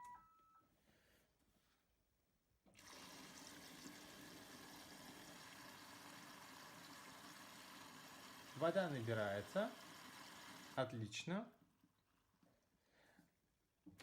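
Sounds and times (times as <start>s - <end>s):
short electronic beep: 0.0s - 0.6s
water running into washing machine: 2.8s - 10.9s.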